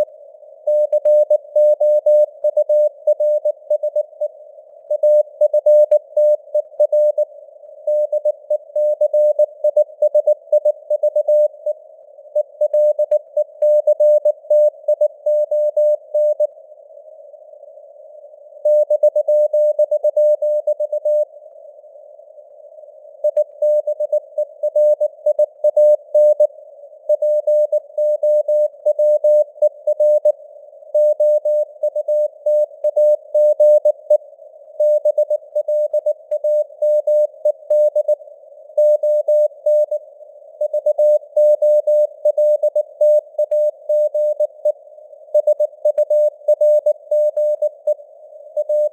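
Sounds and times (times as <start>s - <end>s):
morse code beeps: 45.4s - 48.0s, 48.6s - 48.9s.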